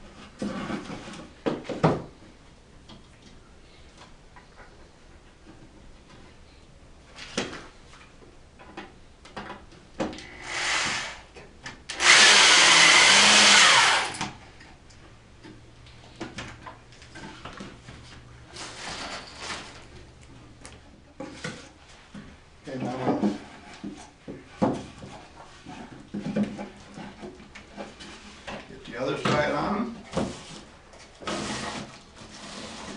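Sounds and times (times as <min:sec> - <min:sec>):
handheld power tool running: 0:10.4 - 0:11.2, 0:11.9 - 0:14.3.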